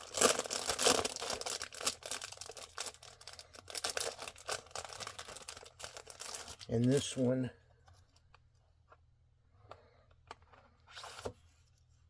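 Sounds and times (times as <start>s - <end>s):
paper and plastic crinkling: 0.0s - 7.2s.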